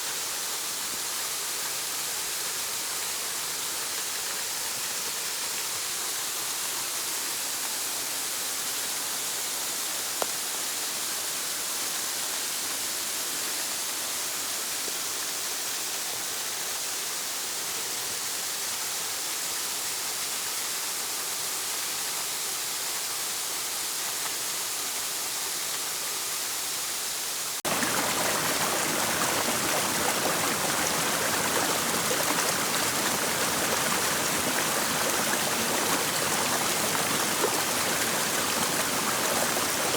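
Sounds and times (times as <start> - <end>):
waterfall rushing: 27.6 - 39.9.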